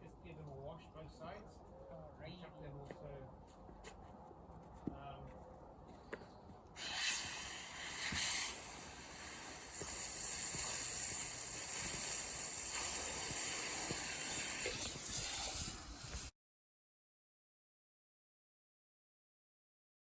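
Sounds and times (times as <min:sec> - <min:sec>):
pressure washer spraying water: 0:06.8 - 0:16.3.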